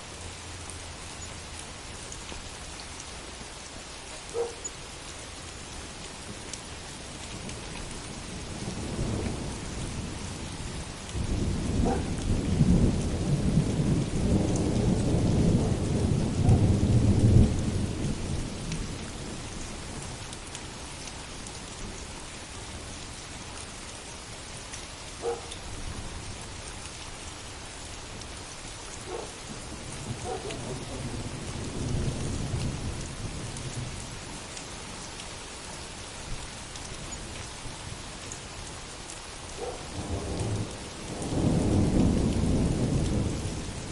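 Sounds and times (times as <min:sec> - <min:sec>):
heavy rain: 0:00.0 - 0:43.9
rolling thunder: 0:11.1 - 0:19.4, 0:29.1 - 0:33.9, 0:39.6 - 0:43.9.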